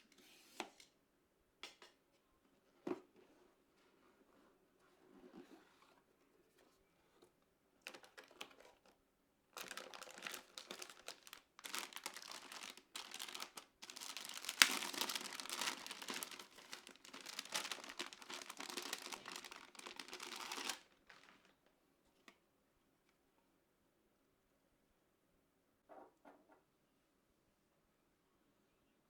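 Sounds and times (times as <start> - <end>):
packaging crinkling and rustling: 7.8 - 21.7.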